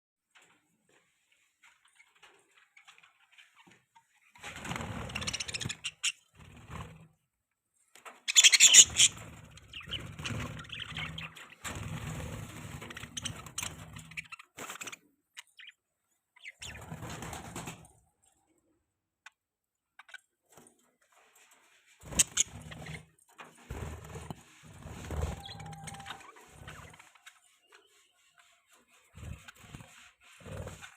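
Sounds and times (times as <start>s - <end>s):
budgerigars chirping and chattering: 5.1s - 6.2s, 8.3s - 11.5s, 16.4s - 16.9s, 22.1s - 23.0s, 25.1s - 30.9s.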